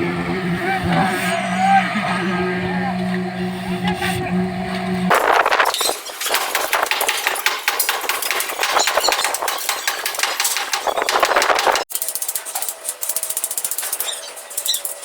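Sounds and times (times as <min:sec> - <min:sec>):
steady machine hum: 0:00.0 - 0:08.8.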